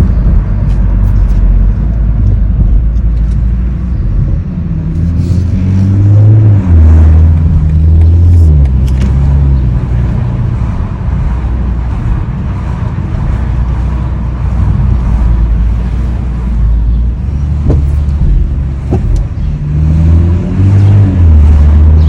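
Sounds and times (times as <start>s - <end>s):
car engine rumbling: 0.0s - 22.0s
short sharp engine knocks: 17.6s - 19.4s.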